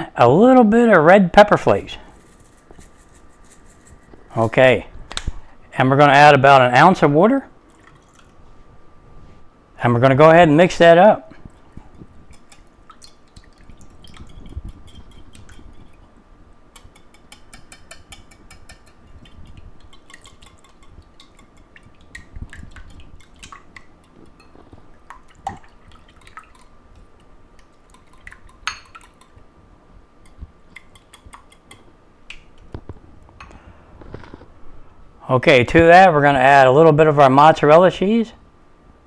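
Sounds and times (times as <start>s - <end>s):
faint steady hum: 0.0s - 39.0s
wet liquid sounds: 7.6s - 8.7s, 11.4s - 16.1s, 18.4s - 29.4s
utensil tapping against bowl: 11.9s - 16.0s, 16.7s - 24.8s, 25.5s - 29.4s, 30.2s - 32.4s.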